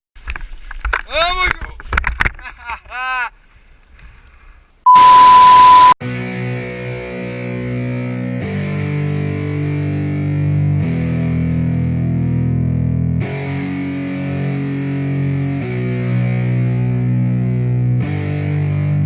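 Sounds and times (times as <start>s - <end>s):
distorted electric guitar chords: 4.9s - 19.0s.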